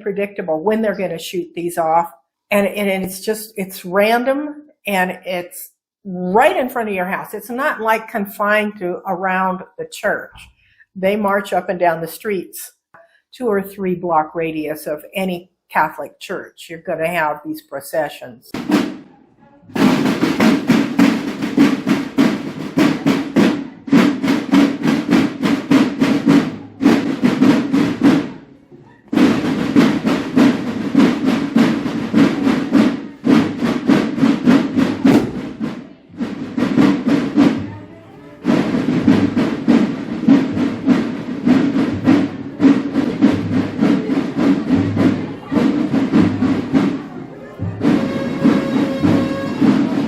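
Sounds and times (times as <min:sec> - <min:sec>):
marching band drumming: 0:18.6 - 0:19.1, 0:19.8 - 0:28.4, 0:29.1 - 0:37.6, 0:38.4 - 0:47.1, 0:47.8 - 0:50.0.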